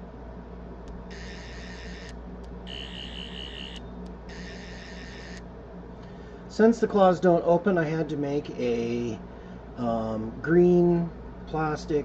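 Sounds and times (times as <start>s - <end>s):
electronic warbling toy sound: 2.7s - 5.4s.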